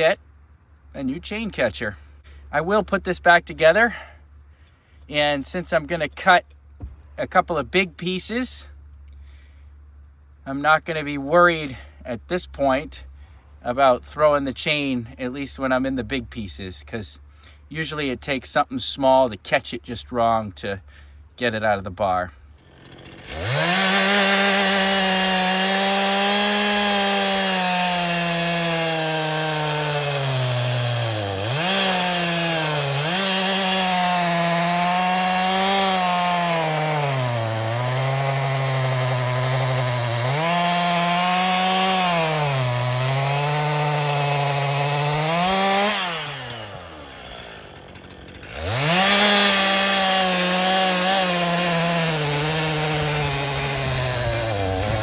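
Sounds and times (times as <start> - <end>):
chainsaw cutting wood: 22.4 - 55.0.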